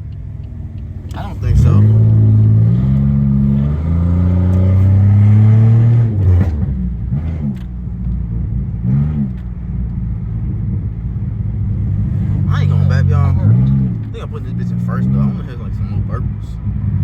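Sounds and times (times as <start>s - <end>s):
engine rev blips: 0.0s - 7.7s
car engine accelerating: 0.0s - 17.0s.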